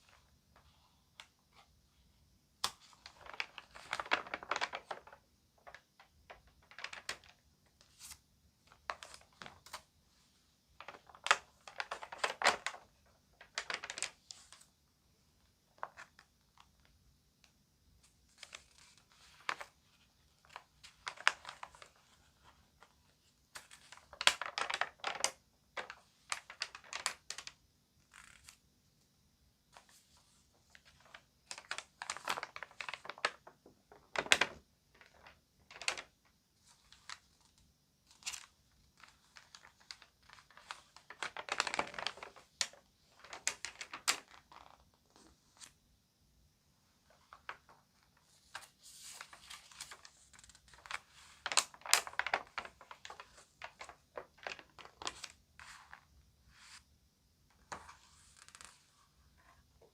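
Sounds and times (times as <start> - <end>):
magazine pages crinkling: 2.6 - 9.9, 10.8 - 14.7, 18.2 - 28.6, 29.8 - 45.8, 47.0 - 56.8, 57.6 - 59.9.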